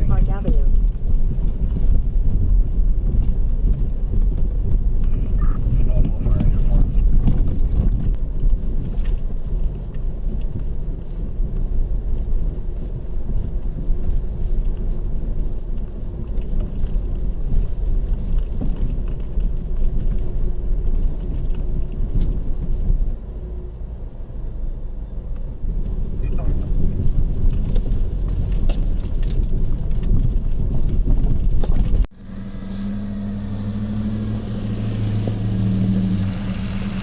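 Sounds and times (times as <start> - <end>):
vehicle engine rumbling: 0.0 - 37.0.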